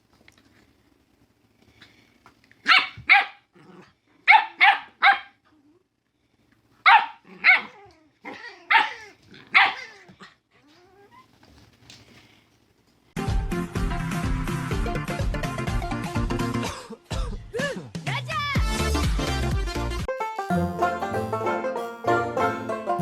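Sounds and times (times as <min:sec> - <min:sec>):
dog barking: 0:02.6 - 0:03.5, 0:04.3 - 0:05.4, 0:06.8 - 0:10.0.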